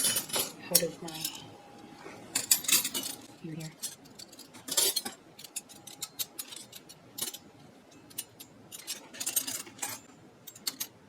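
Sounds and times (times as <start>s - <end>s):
metal flatware clinking: 0.0s - 1.5s, 2.4s - 3.2s, 3.8s - 7.4s, 8.1s - 10.9s.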